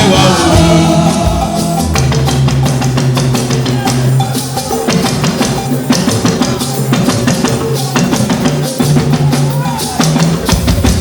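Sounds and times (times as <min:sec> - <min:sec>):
held bass notes: 0:00.0 - 0:05.1
keyboard notes: 0:00.0 - 0:07.0
drum kit and percussion: 0:00.0 - 0:11.0.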